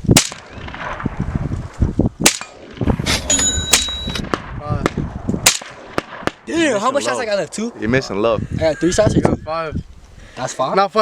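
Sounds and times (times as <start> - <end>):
wind rumble on microphone: 0.0 - 10.4
rifle shots: 0.1 - 1.2, 2.2 - 6.5
steel plate ringing ding: 3.2 - 4.2.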